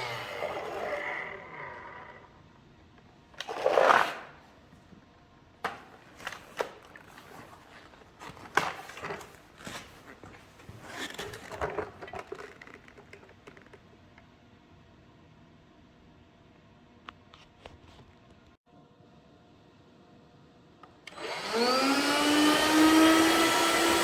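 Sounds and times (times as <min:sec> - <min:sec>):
vacuum motor winding down: 0:00.0 - 0:02.4, 0:21.1 - 0:24.0.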